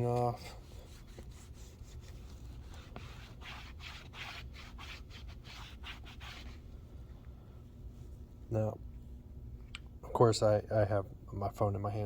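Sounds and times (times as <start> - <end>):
cloth rubbing on a screen: 0.0 - 6.7.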